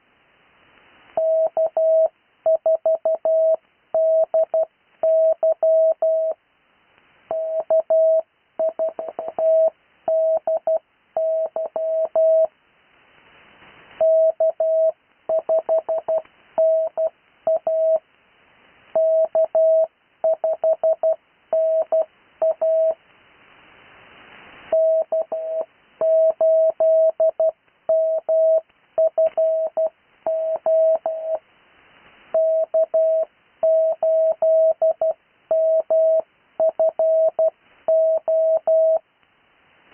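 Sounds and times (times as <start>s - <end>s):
faint hiss: 0.0s - 39.9s
morse code tone: 1.2s - 6.4s, 7.3s - 12.5s, 14.0s - 18.0s, 19.0s - 23.0s, 24.7s - 31.4s, 32.4s - 39.0s.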